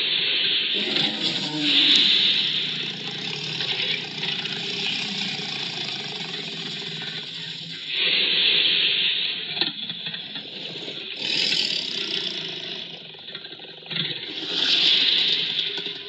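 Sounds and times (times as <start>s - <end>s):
creature hissing roar: 0.7s - 8.3s, 10.2s - 13.2s, 14.2s - 16.0s.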